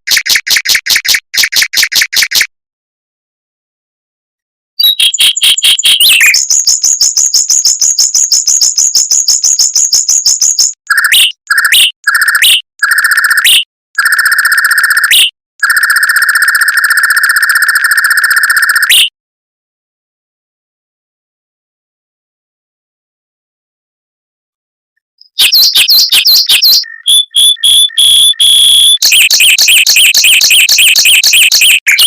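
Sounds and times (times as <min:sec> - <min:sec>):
mockingbird trilling song: 0:04.8 - 0:12.6, 0:25.2 - 0:32.0.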